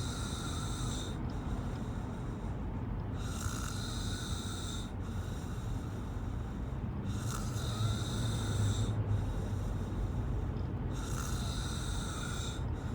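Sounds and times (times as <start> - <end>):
person snoring: 7.1 - 9.0, 11.0 - 12.6.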